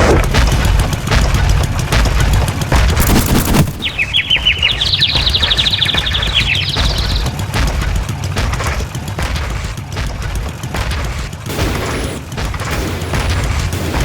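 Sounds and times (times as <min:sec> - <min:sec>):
deep rumble: 0:00.0 - 0:14.0
mechanical hits and booms: 0:00.0 - 0:14.0
rapid high chattering: 0:00.0 - 0:14.0
hissing: 0:03.0 - 0:07.5.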